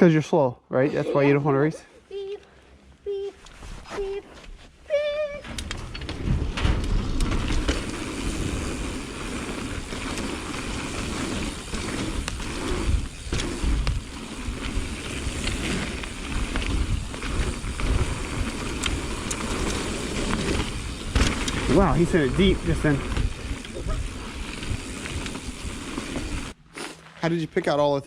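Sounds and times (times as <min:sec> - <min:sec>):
bike clicks and rattles: 0:05.5 - 0:27.0
bike tyres rolling on dirt: 0:05.6 - 0:28.0.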